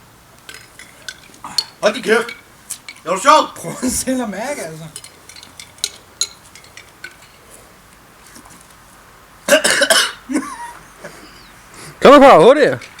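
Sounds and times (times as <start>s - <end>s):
tableware clinks and taps: 4.9s - 7.3s
person coughing: 9.5s - 10.8s.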